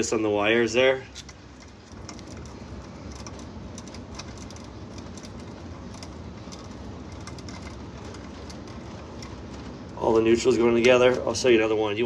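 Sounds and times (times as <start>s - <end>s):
steady low rumble: 0.0s - 12.0s
wires and hand tools clicking: 1.1s - 11.3s.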